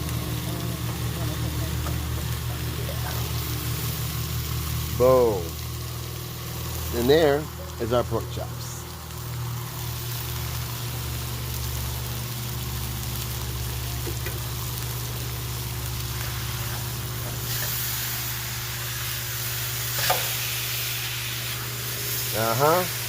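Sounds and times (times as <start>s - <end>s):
meat sizzling on a griddle: 0.0s - 23.0s
steady low hum: 0.0s - 23.0s.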